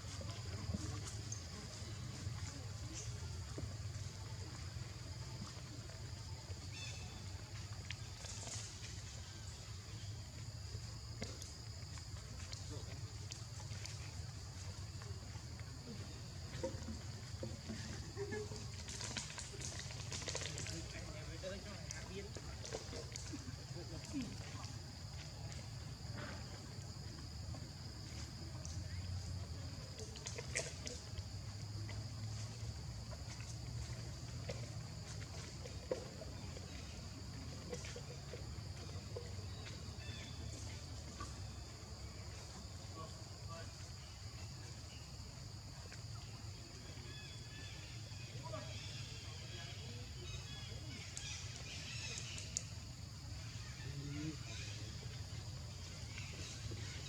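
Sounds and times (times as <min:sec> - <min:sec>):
insects chirring: 0:00.0 - 0:57.0
insect chirring: 0:39.4 - 0:41.3, 0:47.1 - 0:57.0.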